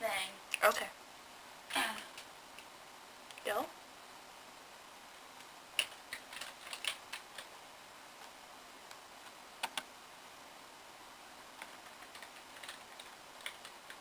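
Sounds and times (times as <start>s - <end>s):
computer keyboard typing: 5.8s - 7.5s, 9.6s - 9.9s, 11.6s - 14.0s.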